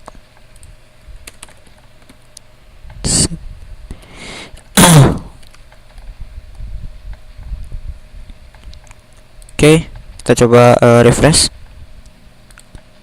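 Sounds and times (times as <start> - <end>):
computer keyboard typing: 0.5 - 2.2
short vocal sound falling in pitch: 4.8 - 5.4.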